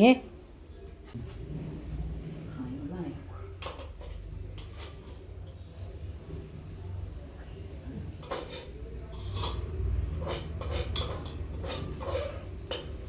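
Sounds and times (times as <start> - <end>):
dishes and cutlery clinking: 3.4 - 6.0, 8.2 - 13.0.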